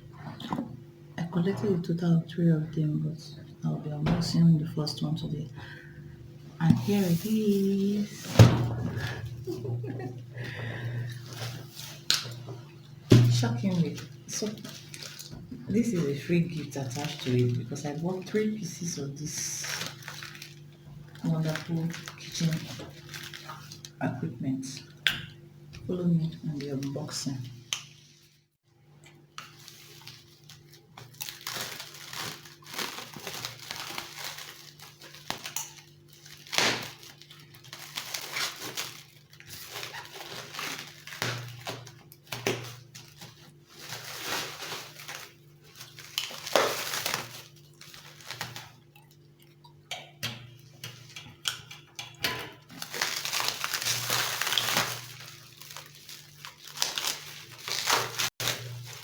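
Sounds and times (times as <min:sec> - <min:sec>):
low steady hum: 0:00.0 - 0:59.0
plastic packaging crinkling: 0:11.1 - 0:24.0, 0:29.2 - 0:49.4, 0:52.6 - 0:59.0.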